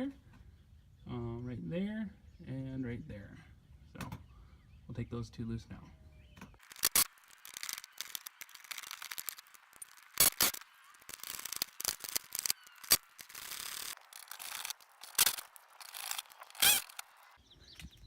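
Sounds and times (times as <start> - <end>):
ratchet clicking: 6.6 - 17.1.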